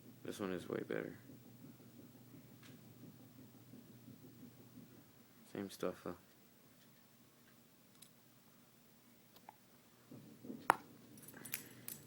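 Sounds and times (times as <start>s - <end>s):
quiet handling rustle: 3.8s - 8.2s.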